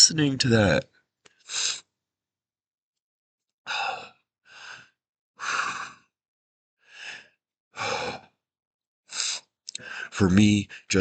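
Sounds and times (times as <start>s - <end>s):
man breathing deeply: 3.7s - 6.1s, 6.8s - 8.3s, 9.1s - 10.2s.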